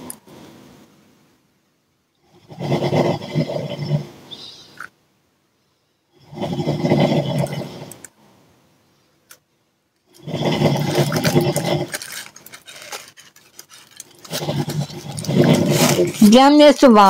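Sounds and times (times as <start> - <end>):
person snoring: 2.3 - 4.1, 6.2 - 8.0, 10.2 - 12.0, 14.3 - 16.2.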